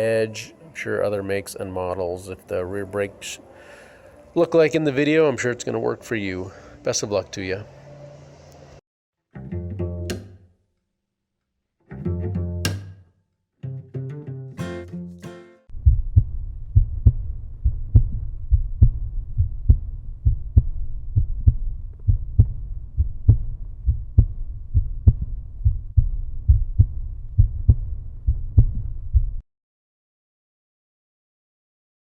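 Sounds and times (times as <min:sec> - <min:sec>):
plucked string music: 0:09.3 - 0:10.6, 0:11.8 - 0:15.7
deep pulsing bass beat: 0:15.7 - 0:29.4
low rumble: 0:15.7 - 0:29.4.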